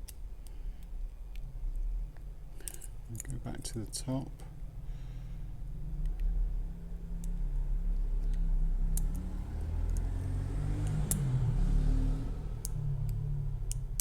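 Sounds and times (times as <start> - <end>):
steady low rumble: 0.1 - 10.1.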